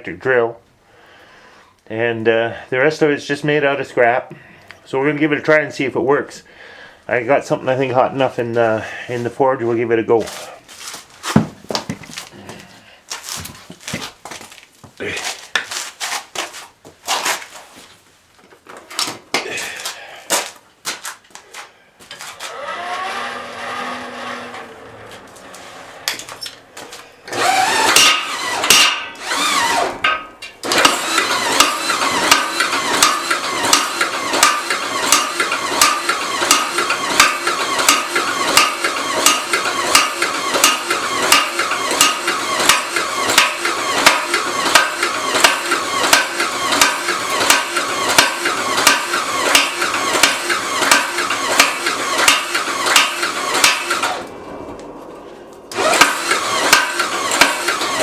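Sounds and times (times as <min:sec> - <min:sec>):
drill motor whine: 0:22.4 - 0:26.4, 0:27.3 - 0:30.0, 0:30.6 - 0:54.9, 0:55.7 - 0:58.0
power hammer metal strikes: 0:27.4 - 0:58.0.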